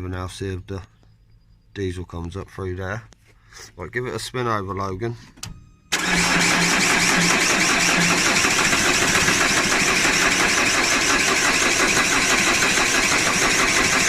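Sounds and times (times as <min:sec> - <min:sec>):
starter motor cranking engine: 0:05.9 - 0:14.0.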